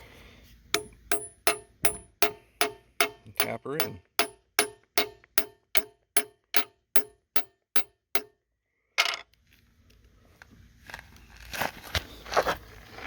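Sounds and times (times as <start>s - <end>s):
hammer striking metal pin: 0.7s - 8.3s.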